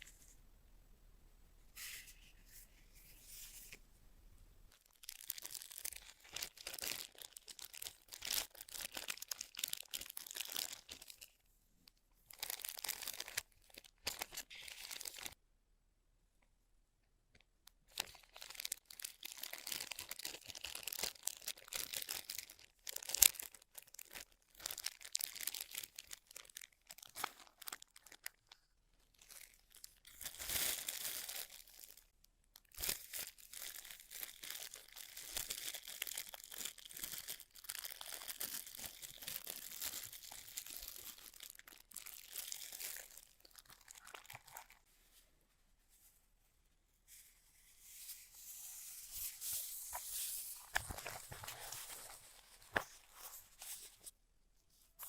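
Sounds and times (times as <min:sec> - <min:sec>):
packaging crinkling and tearing: 0:04.8 - 0:11.3, 0:12.3 - 0:15.4, 0:17.9 - 0:44.8, 0:49.5 - 0:54.1.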